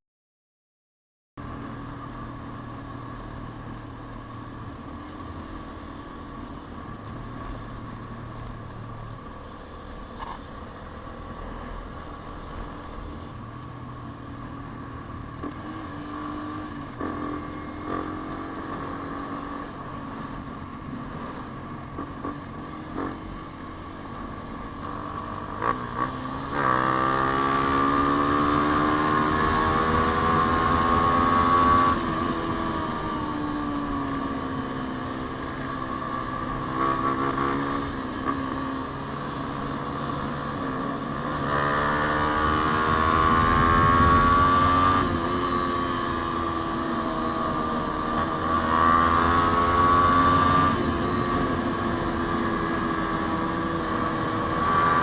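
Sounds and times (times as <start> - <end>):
motorcycle engine revving: 13.9 - 55.0.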